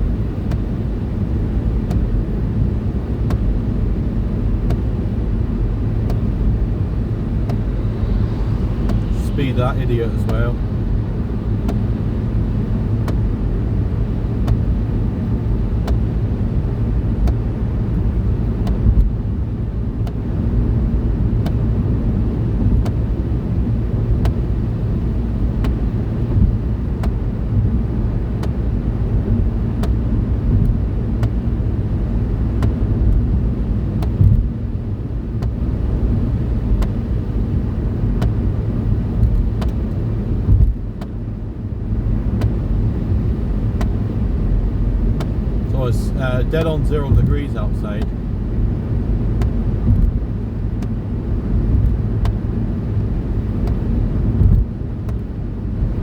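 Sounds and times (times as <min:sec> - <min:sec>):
car road and engine rumble: 0:00.0 - 0:56.0
faint light ticks: 0:01.9 - 0:02.1, 0:25.6 - 0:25.8, 0:36.8 - 0:37.0, 0:39.2 - 0:41.2, 0:42.4 - 0:42.6, 0:43.8 - 0:44.0, 0:54.4 - 0:55.3.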